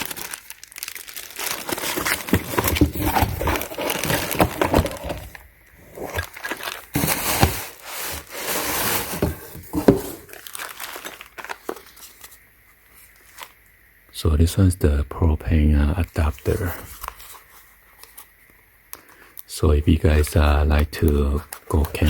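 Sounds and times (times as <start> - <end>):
plastic packaging crinkling: 0.0 - 13.6.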